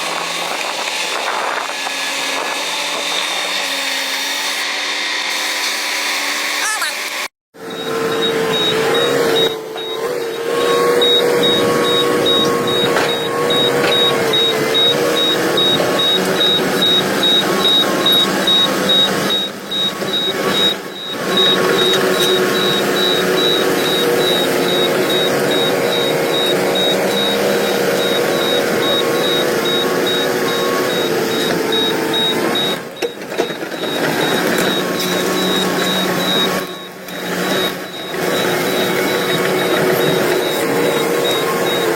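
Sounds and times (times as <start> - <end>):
heavy machinery whining: 0.0 - 41.9.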